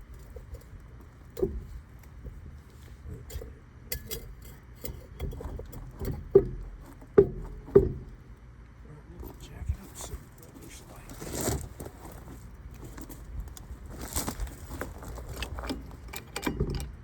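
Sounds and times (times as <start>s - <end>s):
metallic knocks and clunks: 0.0s - 8.3s, 15.3s - 17.0s.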